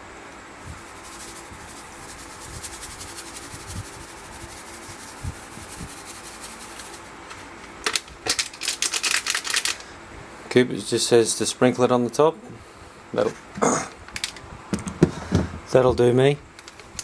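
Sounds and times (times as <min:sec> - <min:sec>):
yeast sprinkling rustle: 0:00.3 - 0:10.0, 0:16.5 - 0:17.0
packet crinkling: 0:05.8 - 0:09.9, 0:16.5 - 0:17.0.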